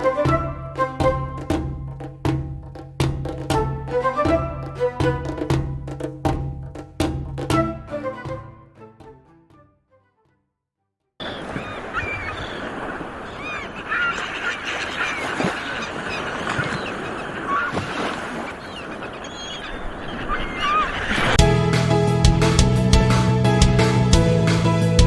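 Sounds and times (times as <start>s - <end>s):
short bird calls: 11.2s - 21.4s
steady rushing background: 19.0s - 25.0s.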